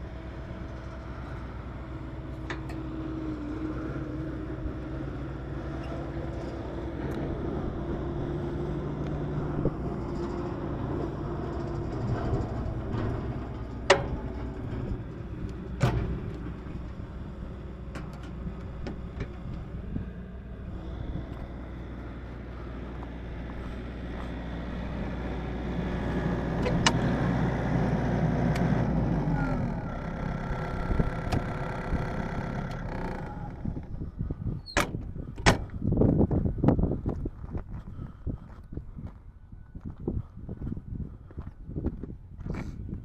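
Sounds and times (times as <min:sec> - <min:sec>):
machine humming and winding down: 0:00.0 - 0:34.3.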